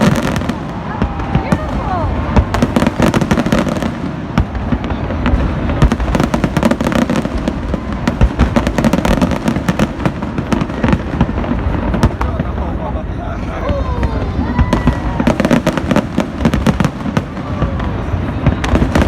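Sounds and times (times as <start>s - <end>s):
fireworks bangs and crackles: 0.0s - 19.0s.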